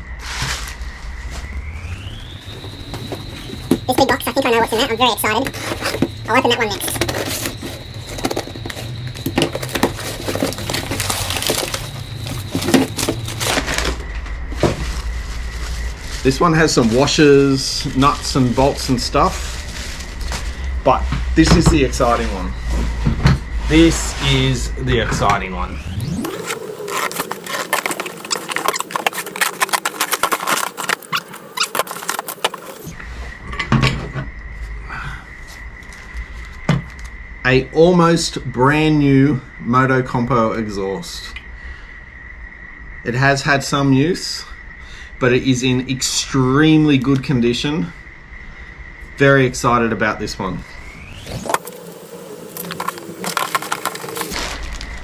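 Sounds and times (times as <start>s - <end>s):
low hum: 0.0s - 18.5s
faint steady high tone: 1.0s - 14.3s
packaging crinkling and rustling: 1.3s - 16.2s, 26.0s - 32.9s, 51.3s - 55.0s.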